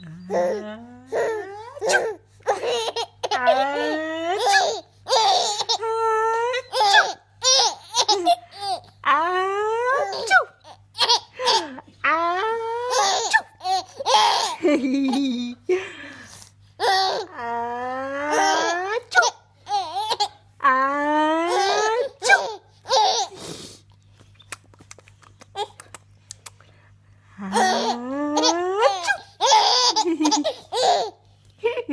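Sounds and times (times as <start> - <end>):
baby giggling and laughing: 0.3 - 5.9, 6.6 - 8.9, 9.9 - 11.9, 12.8 - 15.7, 16.8 - 17.3, 18.3 - 20.4, 21.5 - 23.4, 27.5 - 31.2.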